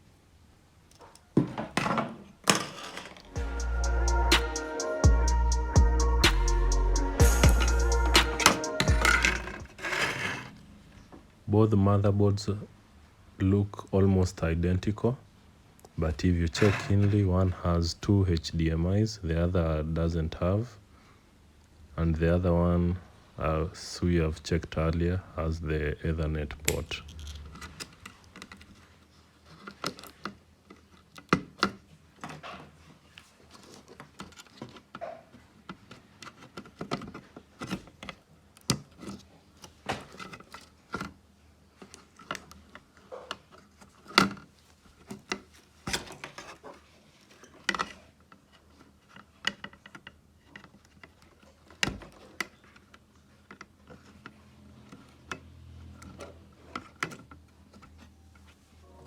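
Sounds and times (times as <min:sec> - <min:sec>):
plastic and metal parts clicking: 0:35.6 - 0:41.2, 0:47.4 - 0:58.5.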